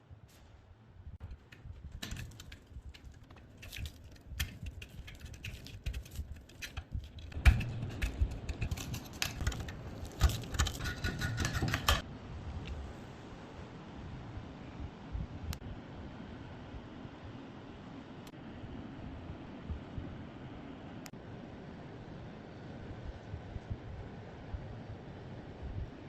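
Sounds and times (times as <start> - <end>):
metal parts clicking and clinking: 1.2 - 12.0.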